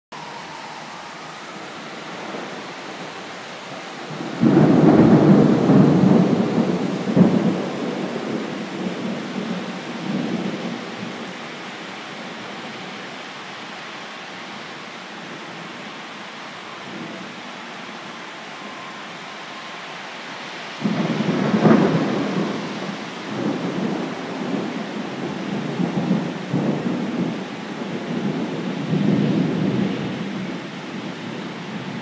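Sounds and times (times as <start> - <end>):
steady rain: 0.1 - 32.0
thunder rolling: 0.2 - 11.3, 20.8 - 30.5.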